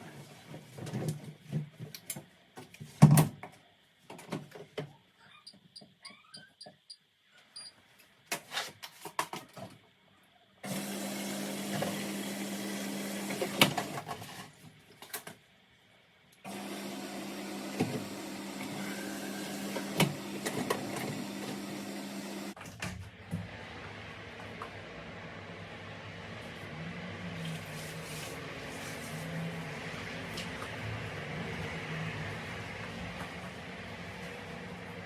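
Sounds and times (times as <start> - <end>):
vacuum cleaner running: 10.6 - 14.1, 16.4 - 22.6, 23.2 - 35.0.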